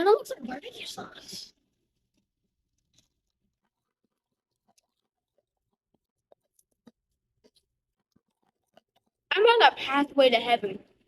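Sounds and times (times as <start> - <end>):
child chewing food: 1.6 - 9.3.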